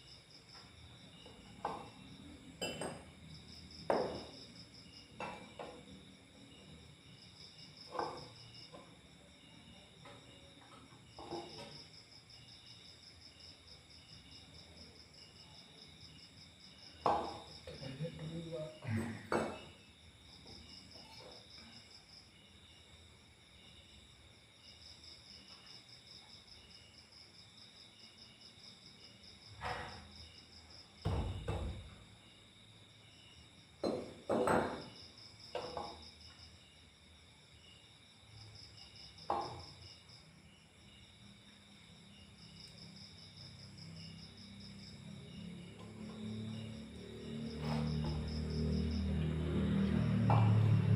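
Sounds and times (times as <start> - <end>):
crickets chirping: 0.0 - 50.9
knocks and clunks: 10.0 - 11.9, 17.0 - 17.8, 31.0 - 32.0, 49.6 - 50.9.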